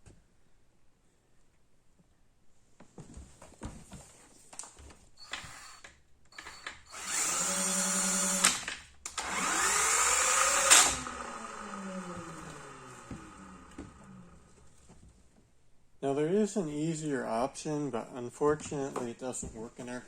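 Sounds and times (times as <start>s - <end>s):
power drill whirring: 5.2s - 14.6s.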